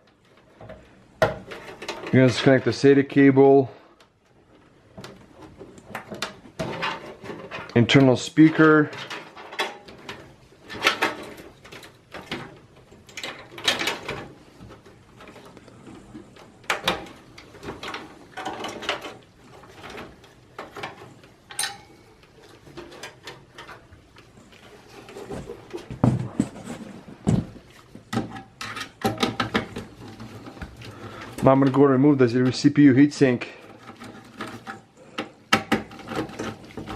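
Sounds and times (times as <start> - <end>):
cable rustling: 0.0 - 36.9.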